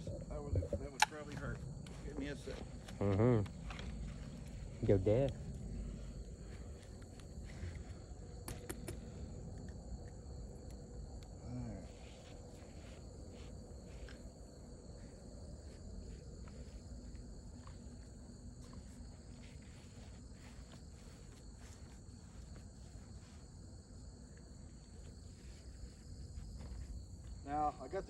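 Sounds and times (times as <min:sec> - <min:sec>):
low rumble: 0:00.0 - 0:08.4
crickets chirring: 0:00.0 - 0:28.0.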